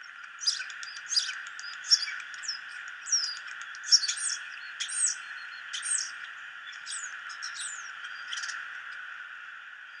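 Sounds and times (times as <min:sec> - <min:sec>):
starling singing: 0:00.4 - 0:05.2.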